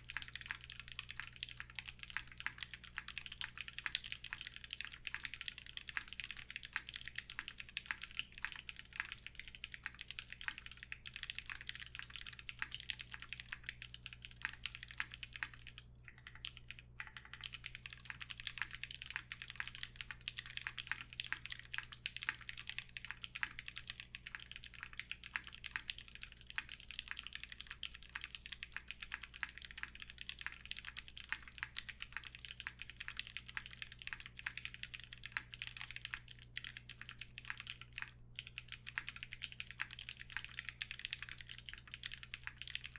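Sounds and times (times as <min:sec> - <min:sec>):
fast mechanical keyboard typing: 0:00.0 - 0:42.9.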